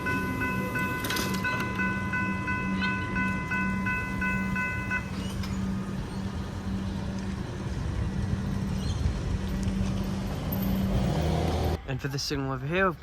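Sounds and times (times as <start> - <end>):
level crossing warning bell: 0.0 - 6.1
rail and road traffic rumble: 0.0 - 11.9.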